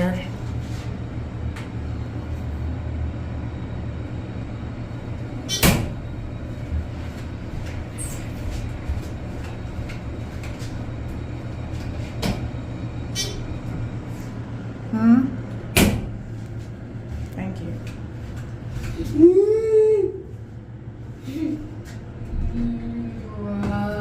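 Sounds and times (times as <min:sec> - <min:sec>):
elevator cab hum: 0:00.0 - 0:24.0.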